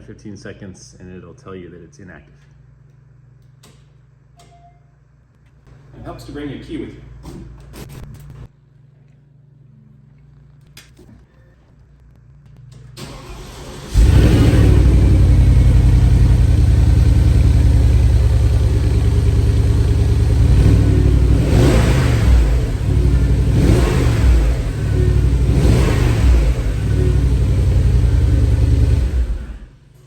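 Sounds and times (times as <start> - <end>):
car engine idling and revving: 13.0 - 29.8.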